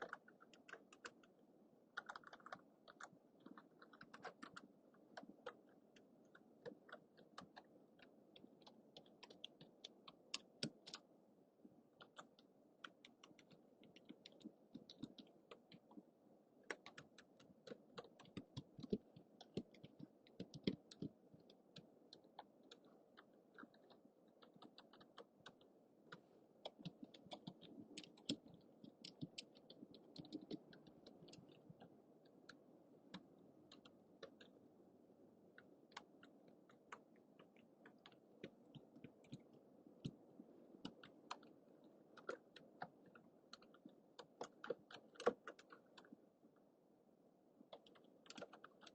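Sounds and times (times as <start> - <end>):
microphone hiss: 0.0 - 48.9
keyboard keystroke clicks: 2.0 - 4.6, 47.7 - 48.9.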